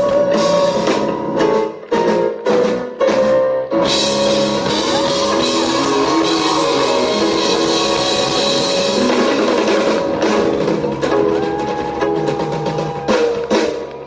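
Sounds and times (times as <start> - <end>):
drum kit: 0.0 - 14.0
guitars: 3.8 - 14.0.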